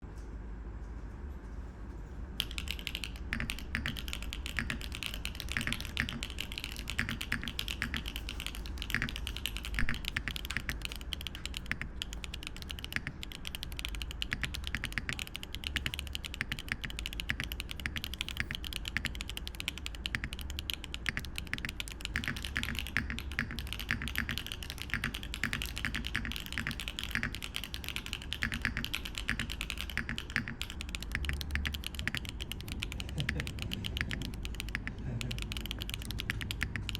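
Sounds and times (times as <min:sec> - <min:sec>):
fast typing on mechanical keyboard: 0:02.4 - 0:36.9.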